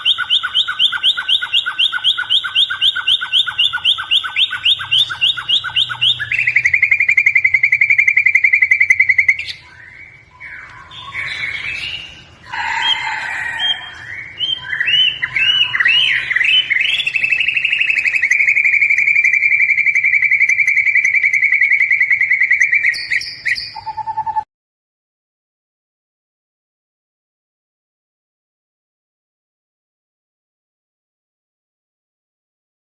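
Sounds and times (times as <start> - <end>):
songbird trilling and singing: 0.0 - 24.4.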